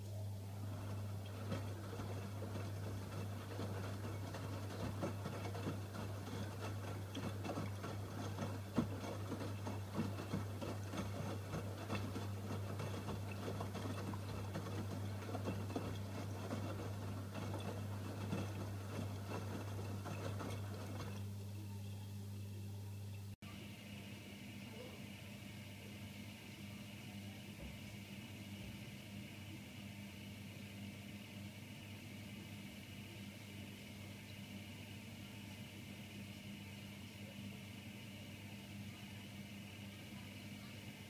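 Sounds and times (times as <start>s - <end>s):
washing machine hum: 0.0s - 41.0s
laundry tumbling and splashing: 0.6s - 21.2s.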